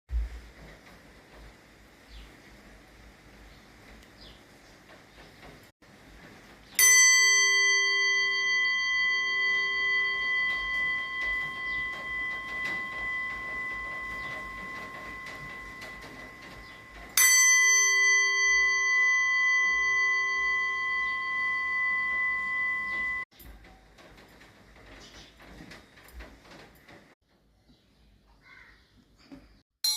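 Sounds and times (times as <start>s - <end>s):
bronze vessel ringing: 6.7s - 23.3s.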